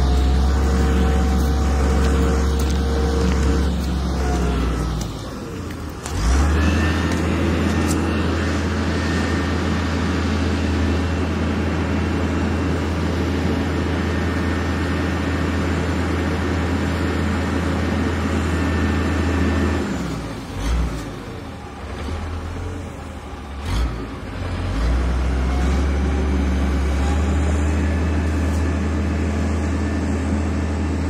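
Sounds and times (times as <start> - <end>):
motor engine running: 0.0 - 21.1.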